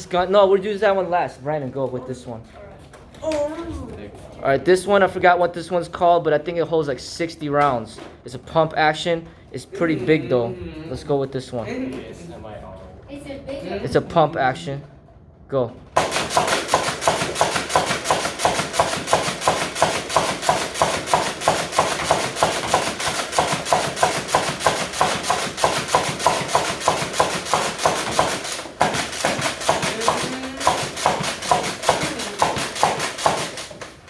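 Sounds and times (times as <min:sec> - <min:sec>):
toy blaster firing rapidly: 0:16.0 - 0:34.0.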